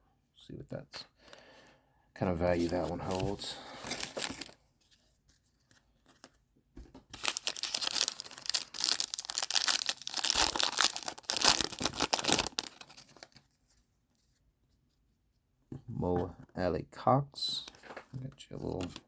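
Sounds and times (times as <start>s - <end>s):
plastic wrapper tearing and crinkling: 7.1s - 13.4s.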